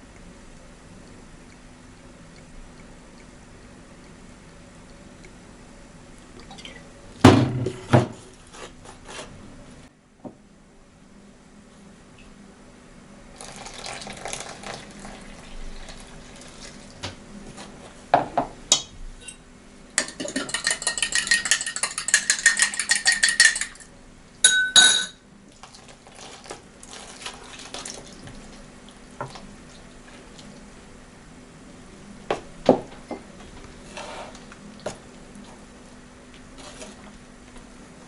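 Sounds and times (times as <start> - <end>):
dishes clattering: 20.0 - 23.9, 24.5 - 25.2
utensil stirring in a bowl: 20.0 - 23.9, 33.6 - 37.7
utensils clinking against dishes: 20.0 - 23.9, 24.5 - 25.2.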